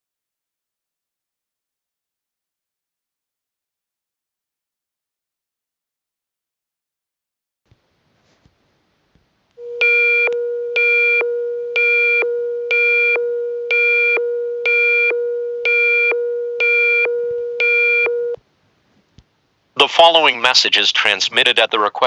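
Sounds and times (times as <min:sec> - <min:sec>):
steady low tone: 0:09.6 - 0:18.4
pulsing higher beep: 0:09.8 - 0:18.4.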